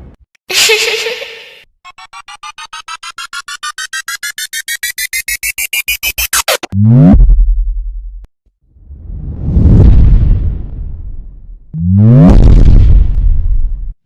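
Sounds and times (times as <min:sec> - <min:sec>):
rising pulsing electronic tone: 0:01.9 - 0:08.0
deep bass drop: 0:06.7 - 0:14.0.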